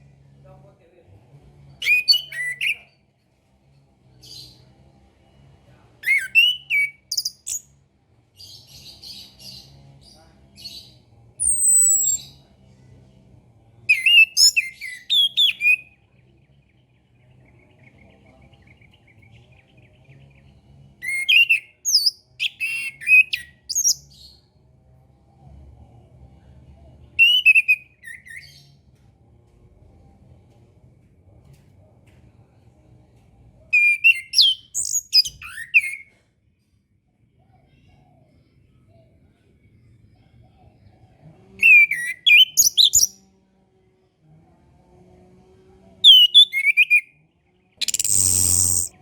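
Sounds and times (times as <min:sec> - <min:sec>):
faint low hum: 0:00.0 - 0:06.1, 0:15.8 - 0:21.3, 0:28.0 - 0:33.7, 0:34.8 - 0:41.6
thrush singing whistled notes: 0:46.1 - 0:47.2, 0:47.8 - 0:49.0.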